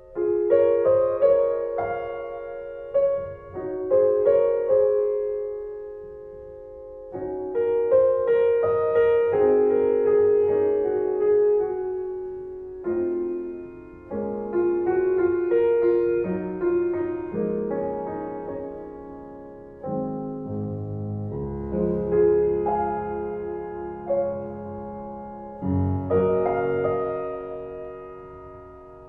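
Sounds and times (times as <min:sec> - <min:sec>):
slow piano music: 0:00.0 - 0:29.0.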